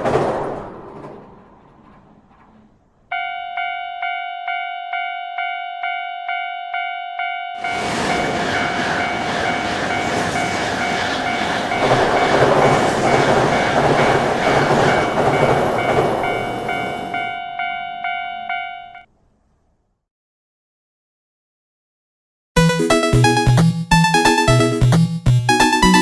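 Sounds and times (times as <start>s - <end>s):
level-crossing bell clanging: 3.1s - 19.1s
train rushing past: 7.6s - 17.4s.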